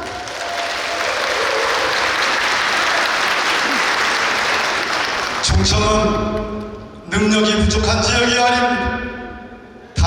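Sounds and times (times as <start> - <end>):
audience applauding: 0.0 - 6.8.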